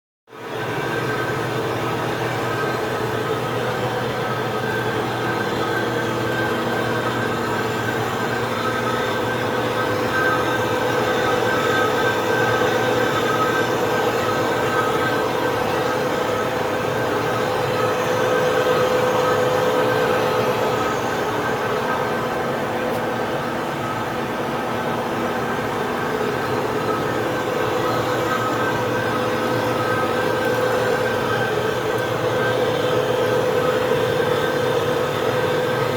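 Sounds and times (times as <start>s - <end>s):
machine tool whining: 0.4s - 35.9s.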